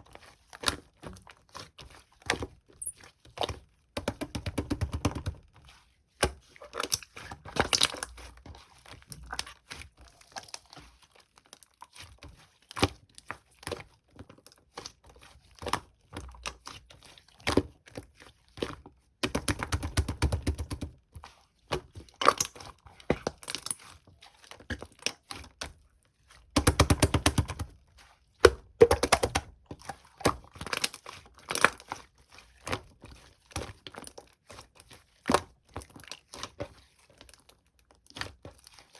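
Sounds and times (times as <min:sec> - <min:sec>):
slime squishing pops and clicks: 0:28.4 - 0:29.5.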